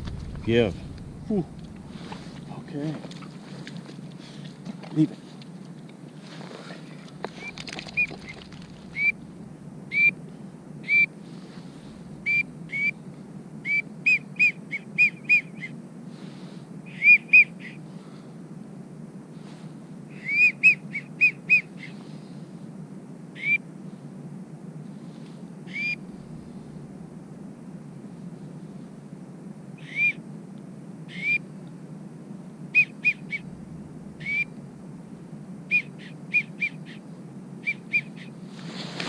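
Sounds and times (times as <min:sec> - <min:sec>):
low background hiss: 0:00.0 - 0:38.9
duck call whistle: 0:35.7 - 0:36.8.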